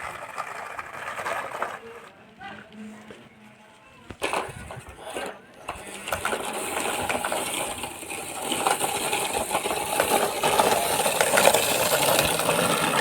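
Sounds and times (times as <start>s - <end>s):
scraping in gravel: 4.1s - 13.0s.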